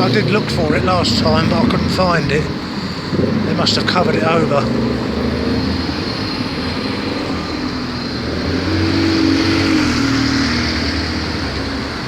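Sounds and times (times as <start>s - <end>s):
vehicle passing by: 0.0s - 12.0s.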